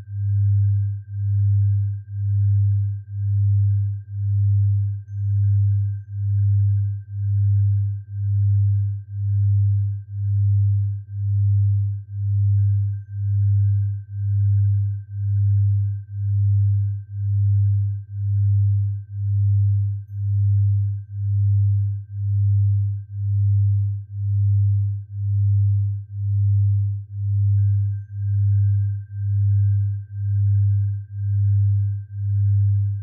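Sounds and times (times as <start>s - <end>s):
faint steady high tone: 0.0s - 33.0s
low pulsing electronic tone: 0.0s - 33.0s.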